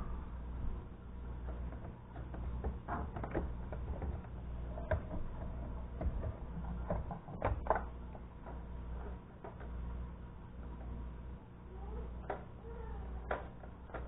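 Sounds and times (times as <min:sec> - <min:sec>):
steady low hum: 0:00.0 - 0:14.0
plastic parts clicking and knocking: 0:01.4 - 0:09.8, 0:13.2 - 0:14.0.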